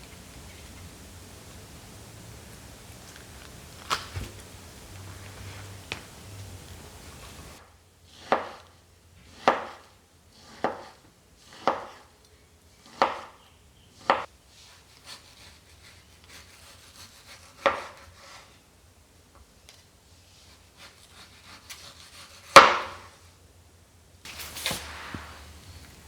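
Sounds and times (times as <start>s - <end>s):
knife cutting on cutting board: 9.4s - 12.0s.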